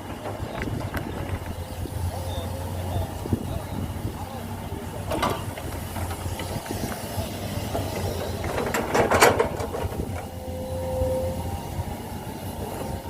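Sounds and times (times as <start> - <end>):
diesel machinery rumbling: 0.0 - 13.0
metallic clanking: 5.1 - 6.8, 7.6 - 10.4.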